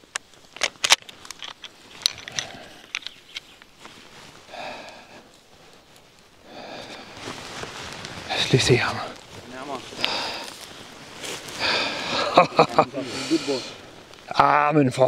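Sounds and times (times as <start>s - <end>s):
rifle clicks and clacks: 0.1s - 3.2s
slow breathing: 2.2s - 3.0s, 4.0s - 8.4s, 9.9s - 14.1s.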